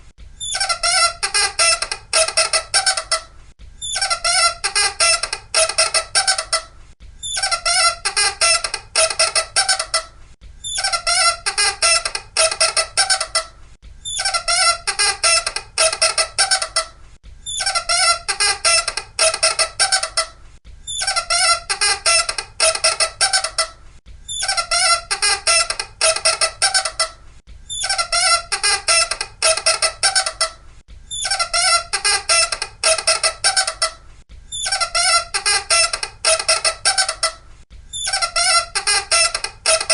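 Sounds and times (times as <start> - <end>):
rapid squeaking: 34.5 - 39.9.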